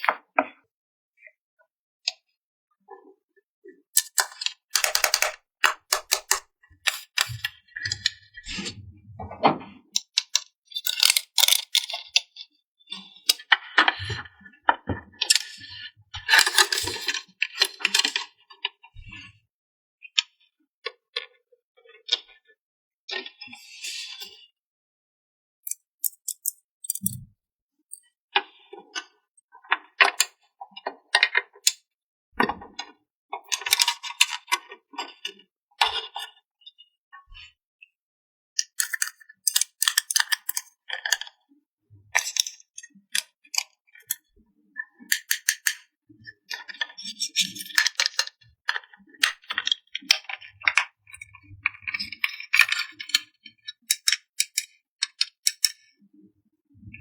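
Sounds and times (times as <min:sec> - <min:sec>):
plastic toy pieces clicking: 0:04.0 - 0:07.5, 0:10.8 - 0:12.0, 0:16.4 - 0:17.1, 0:25.7 - 0:27.2, 0:38.6 - 0:41.2, 0:45.1 - 0:45.8, 0:47.3 - 0:48.3, 0:53.9 - 0:55.8.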